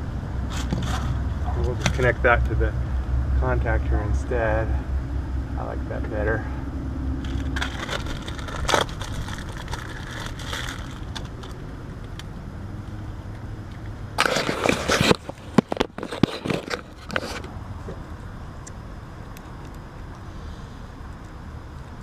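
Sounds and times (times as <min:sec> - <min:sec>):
steady low rumble: 0:00.0 - 0:22.0
rustling and clattering: 0:00.5 - 0:02.2, 0:07.2 - 0:11.6, 0:13.7 - 0:17.5.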